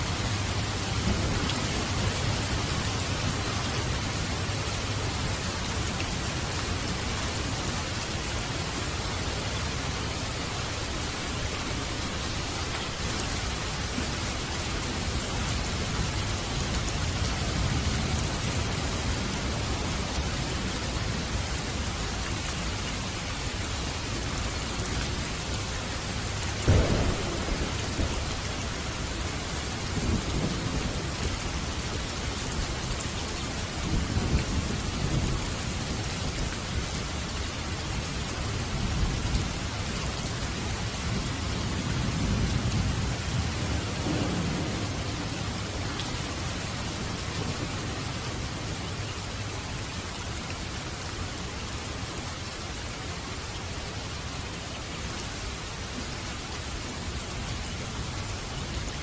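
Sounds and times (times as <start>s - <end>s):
low rumble of thunder: 0.0s - 52.0s
heavy rain: 0.0s - 59.0s
thunder clap: 26.6s - 28.6s.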